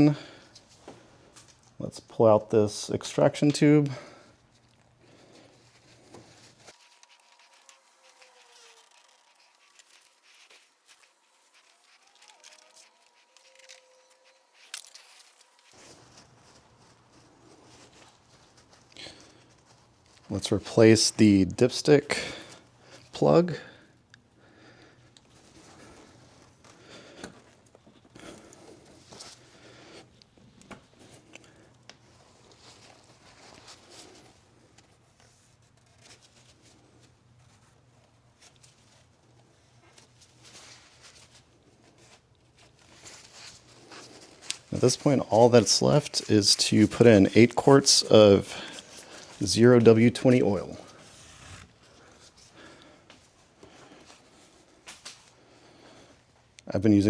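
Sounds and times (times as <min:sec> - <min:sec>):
plastic tube rustling: 0:04.4 - 0:20.5, 0:39.9 - 0:55.3.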